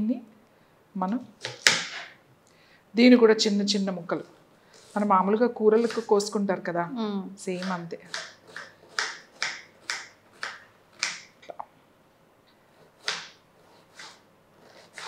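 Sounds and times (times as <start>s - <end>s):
knife chopping onion: 7.5s - 11.3s, 12.8s - 15.0s.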